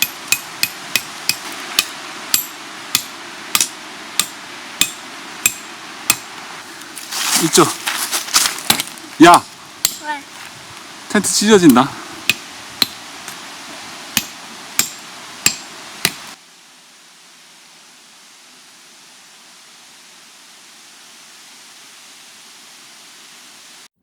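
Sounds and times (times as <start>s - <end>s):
hammer striking metal tent peg: 0.0s - 6.2s, 14.2s - 16.2s
faint steady hiss: 0.0s - 24.0s.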